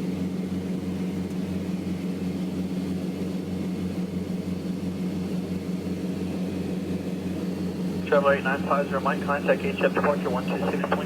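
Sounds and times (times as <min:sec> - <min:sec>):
twin propeller engines droning: 0:07.0 - 0:11.0.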